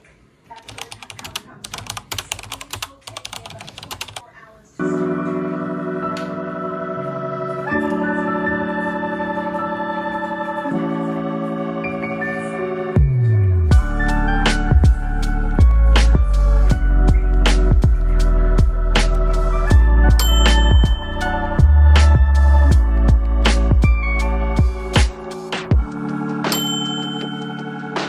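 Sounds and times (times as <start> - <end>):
keyboard typing clicks: 0.5 - 4.2
organ-like synth chords: 4.8 - 26.5.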